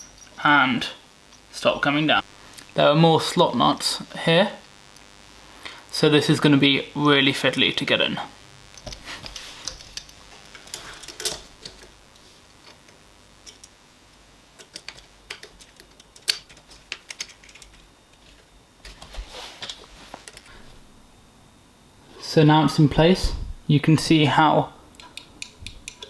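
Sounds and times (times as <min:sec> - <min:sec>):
small metal parts clicking: 0:08.8 - 0:11.9, 0:13.4 - 0:13.8, 0:14.6 - 0:18.3, 0:25.0 - 0:26.0.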